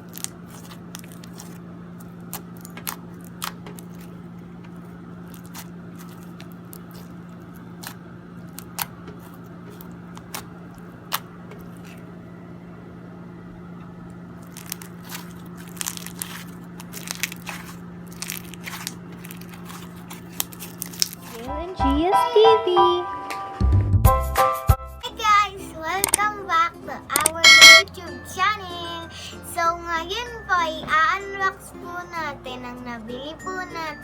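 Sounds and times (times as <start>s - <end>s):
slime crackling and popping: 0.0s - 4.1s, 14.4s - 21.4s
steady low hum: 27.1s - 27.8s.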